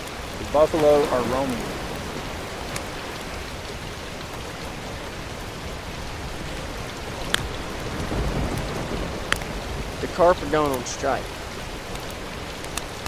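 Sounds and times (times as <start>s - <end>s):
faint clicks: 0.0s - 3.3s, 7.2s - 13.0s
wind on microphone: 0.0s - 13.0s.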